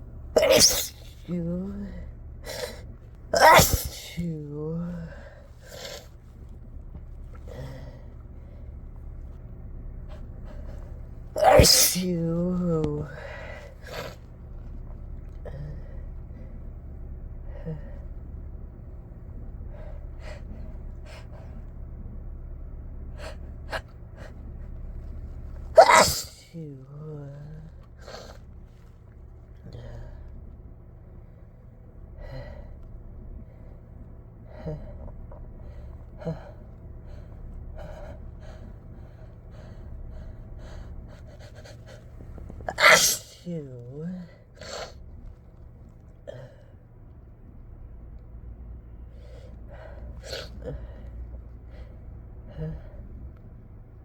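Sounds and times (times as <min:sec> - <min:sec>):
steady low hum: 0:00.0 - 0:54.0
person gasping before a sneeze: 0:00.4 - 0:01.2, 0:03.4 - 0:04.2, 0:11.4 - 0:12.2, 0:25.8 - 0:26.6, 0:42.7 - 0:44.0
person sneezing: 0:00.4 - 0:01.9, 0:03.4 - 0:06.1, 0:11.4 - 0:14.2, 0:25.8 - 0:27.4, 0:42.7 - 0:45.0, 0:50.2 - 0:50.9
person gasping and sniffing: 0:25.8 - 0:26.9, 0:42.7 - 0:44.0.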